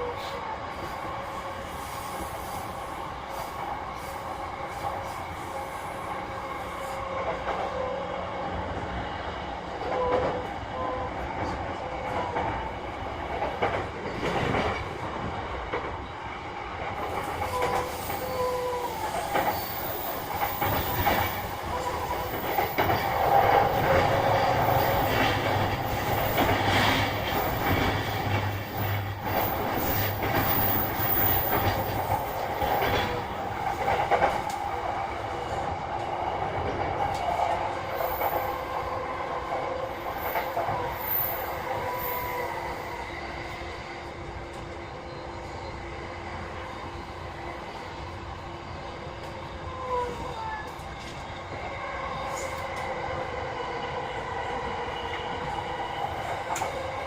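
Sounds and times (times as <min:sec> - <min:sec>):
train wheels rumbling on rails: 0:00.0 - 0:57.0
rail joint clicks: 0:11.4 - 0:41.7, 0:55.1 - 0:57.0.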